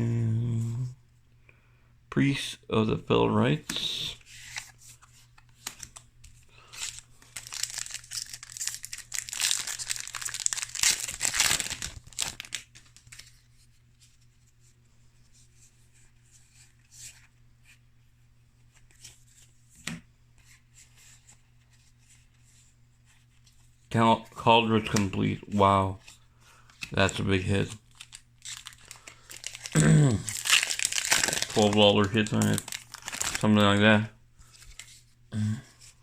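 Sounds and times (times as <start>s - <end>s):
cards being handled: 3.6s - 14.6s, 24.7s - 33.8s
foil wrapper tearing and crinkling: 6.8s - 13.3s, 27.0s - 33.6s.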